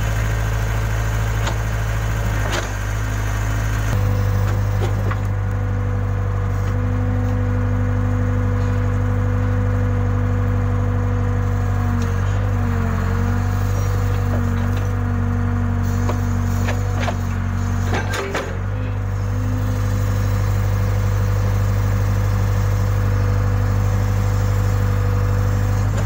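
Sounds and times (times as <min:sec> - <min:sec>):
diesel engine running: 0:00.0 - 0:26.0.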